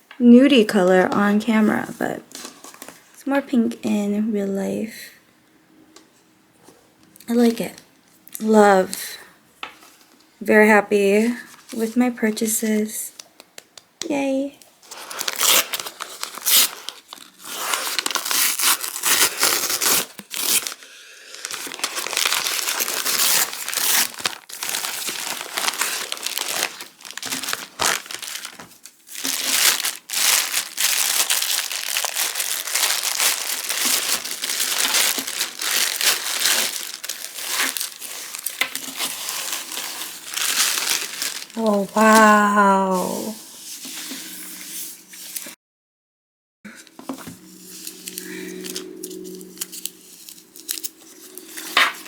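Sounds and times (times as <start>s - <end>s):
packaging crinkling: 14.8s - 42.4s, 46.9s - 52.0s.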